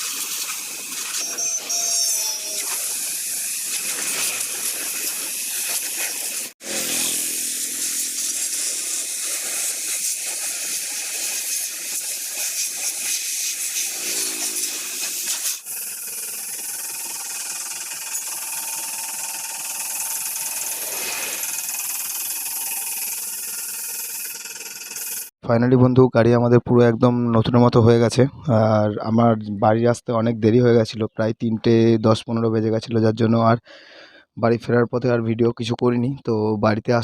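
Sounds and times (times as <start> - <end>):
pressure washer motor: 0.0 - 25.3
pressure washer water jet hiss: 0.0 - 25.3.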